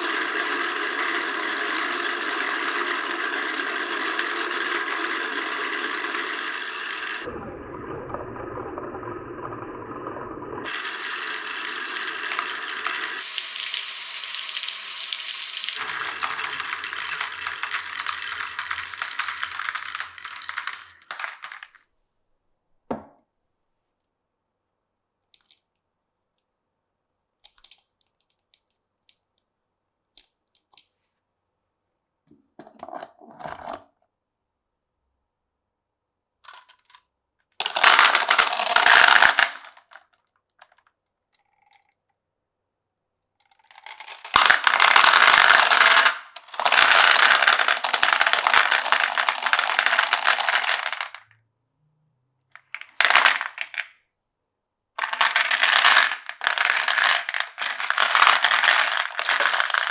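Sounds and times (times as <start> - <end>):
marbles rolling through wooden run: 0.0 - 7.3, 8.8 - 21.8, 37.6 - 40.0, 43.5 - 51.2, 52.7 - 53.9, 55.0 - 59.9.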